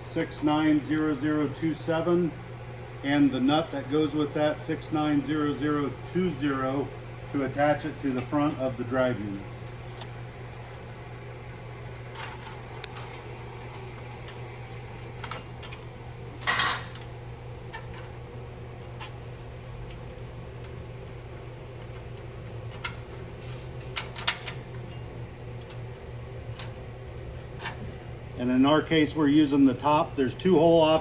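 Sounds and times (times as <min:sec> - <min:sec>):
steady low hum: 0:00.0 - 0:31.0
bolts and nuts clinking: 0:09.6 - 0:10.8, 0:11.7 - 0:17.1
metal parts rattling: 0:11.8 - 0:13.2, 0:16.4 - 0:17.0.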